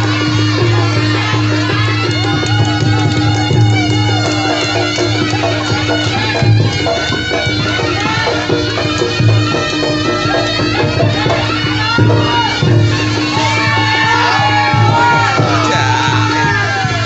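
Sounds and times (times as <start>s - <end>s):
drum strokes: 0.0s - 17.0s
reedy wind melody: 0.0s - 17.0s.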